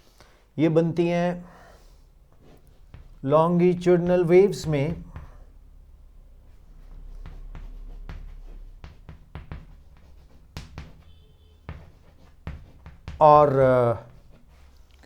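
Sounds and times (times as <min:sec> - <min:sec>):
light knocks and taps: 0:02.6 - 0:03.2, 0:06.9 - 0:14.9.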